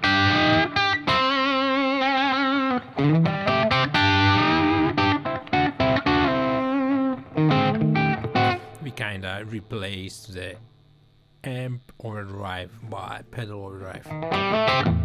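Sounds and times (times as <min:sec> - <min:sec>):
overdriven electric guitar: 0:00.0 - 0:08.9, 0:14.1 - 0:15.0.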